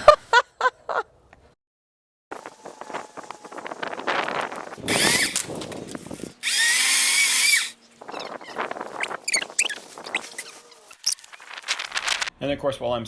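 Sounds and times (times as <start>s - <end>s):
chainsaw running: 2.4s - 7.8s.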